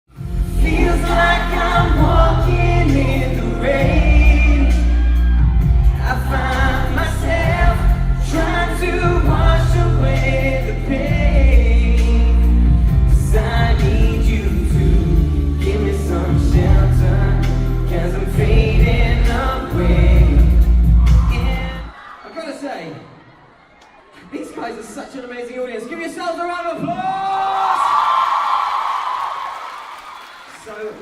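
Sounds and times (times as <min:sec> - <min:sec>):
sustained bass line: 0:00.2 - 0:21.9
live pop band with vocals: 0:00.2 - 0:22.0.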